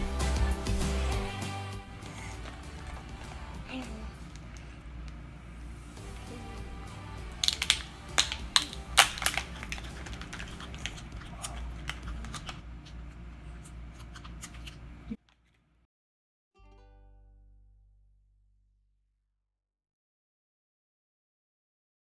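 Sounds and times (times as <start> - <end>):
steady low hum: 0.0 - 15.2
packaging crinkling and clicking: 7.4 - 12.6.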